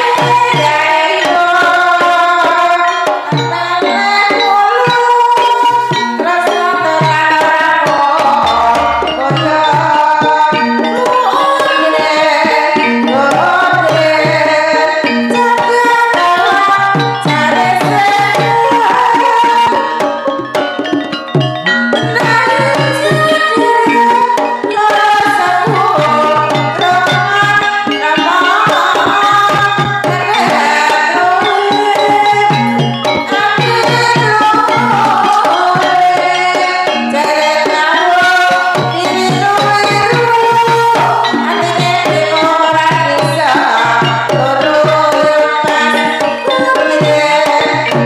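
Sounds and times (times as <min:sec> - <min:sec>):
person singing: 0:00.0 - 0:20.4, 0:22.0 - 0:48.0
hand drums beating: 0:00.0 - 0:48.0
ringing metallophone tones: 0:00.0 - 0:48.0
ringing pitched gong notes: 0:08.4 - 0:09.9.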